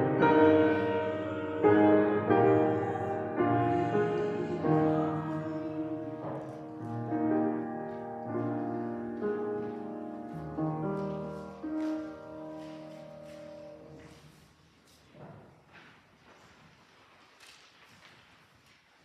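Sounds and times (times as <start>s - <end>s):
held keyboard chords church music: 0.0s - 14.0s.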